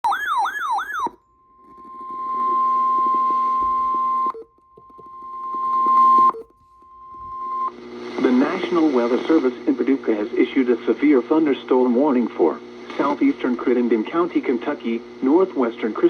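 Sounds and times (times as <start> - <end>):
steady warning alarm tone: 0.0 - 7.8
faint radio hiss and hum: 5.0 - 16.0.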